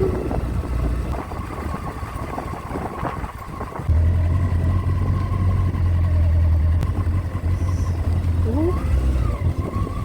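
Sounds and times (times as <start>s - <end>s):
wind on microphone: 0.0s - 5.8s, 8.7s - 10.0s
motorcycle engine rumble: 0.0s - 10.0s.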